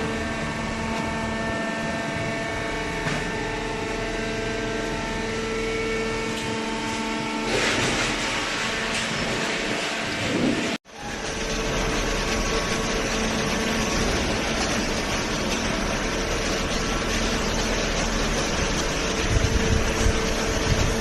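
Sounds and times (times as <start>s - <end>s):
baler machine hum: 0.0s - 21.0s.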